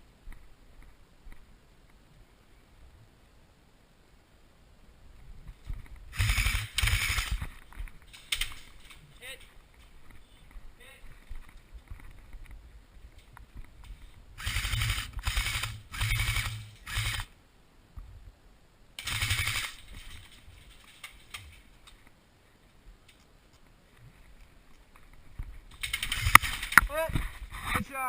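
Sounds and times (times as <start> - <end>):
electric gun firing bursts: 6.1 - 7.4, 14.4 - 17.3, 19.0 - 20.2, 25.8 - 26.8.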